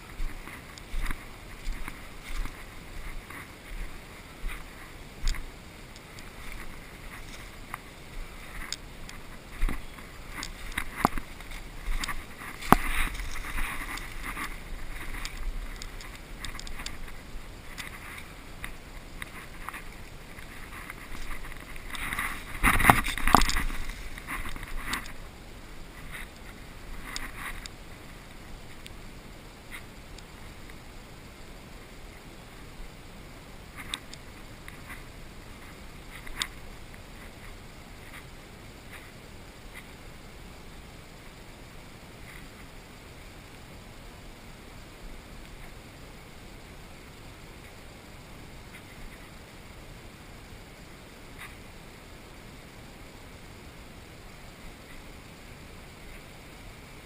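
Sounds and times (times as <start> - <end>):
rustling and scraping: 0.0 - 28.8.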